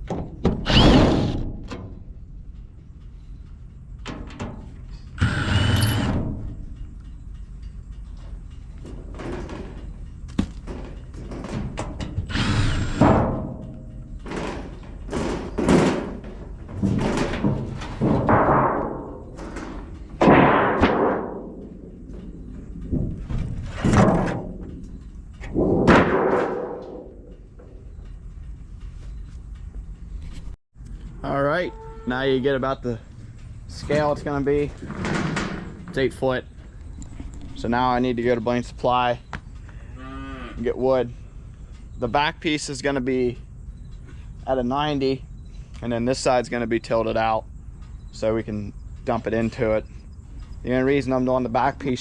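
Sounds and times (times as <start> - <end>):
heavy thuds and clanks: 8.0 - 28.4, 33.3 - 39.4.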